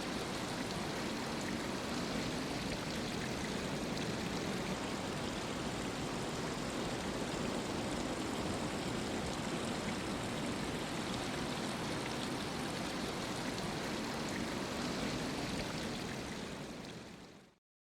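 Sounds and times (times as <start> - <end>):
water trickling and dripping: 0.0 - 17.5.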